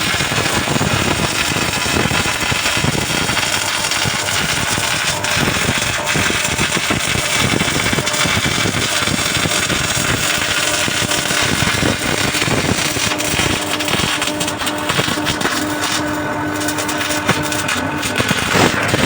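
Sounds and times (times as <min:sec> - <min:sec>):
welding arc crackling: 0:00.0 - 0:19.0.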